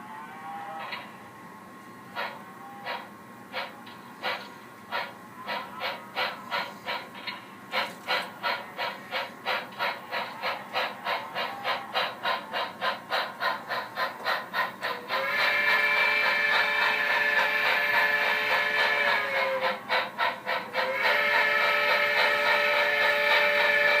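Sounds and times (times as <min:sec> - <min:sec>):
multi-tone steam whistle: 0:00.0 - 0:01.1, 0:14.9 - 0:24.0
model steam locomotive chuffing: 0:00.0 - 0:24.0.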